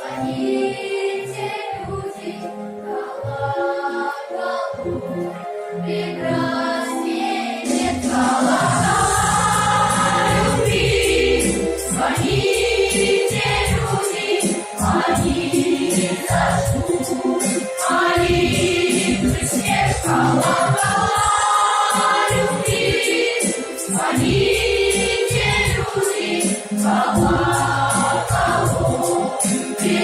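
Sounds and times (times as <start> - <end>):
choir singing: 0.0 - 30.0.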